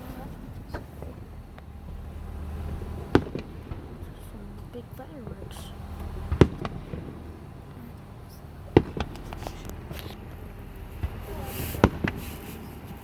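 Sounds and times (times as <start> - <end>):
fireworks bangs: 0.0 - 13.0
fireworks pops and crackle: 0.4 - 4.2, 6.0 - 7.3, 8.7 - 13.0.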